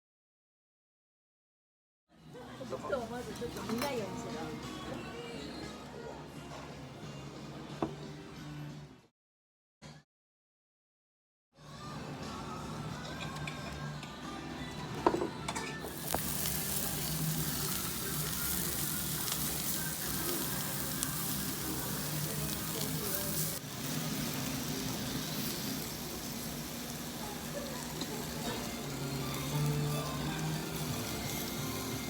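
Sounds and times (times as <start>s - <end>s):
food sizzling on hot surface: 15.9s - 32.0s.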